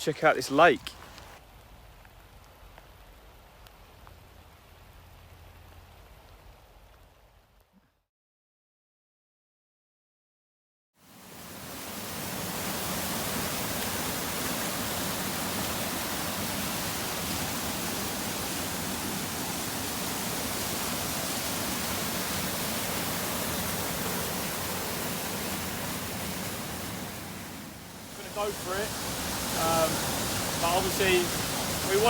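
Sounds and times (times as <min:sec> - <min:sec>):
waterfall rushing: 0:00.0 - 0:01.4, 0:11.3 - 0:32.0.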